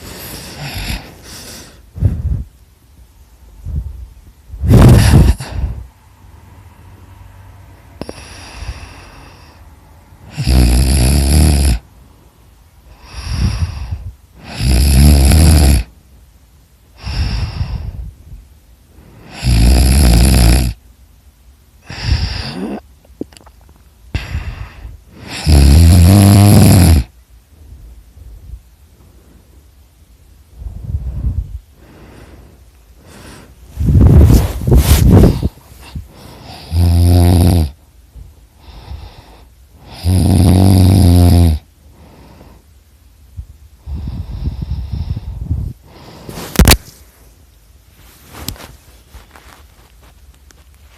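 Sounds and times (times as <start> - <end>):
person snoring loudly: 0.0 - 2.4, 4.6 - 5.9, 10.2 - 11.8, 12.9 - 15.9, 19.2 - 20.8, 21.8 - 22.8, 24.2 - 27.1, 33.0 - 37.8, 38.6 - 41.7
quiet breaths: 0.0 - 50.9.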